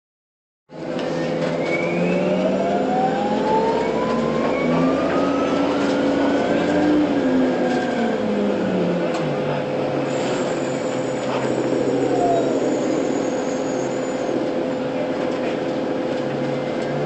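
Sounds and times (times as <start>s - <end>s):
bus engine running: 0.7s - 17.0s
rising high whine: 1.0s - 15.2s
steady high tone: 10.2s - 15.1s.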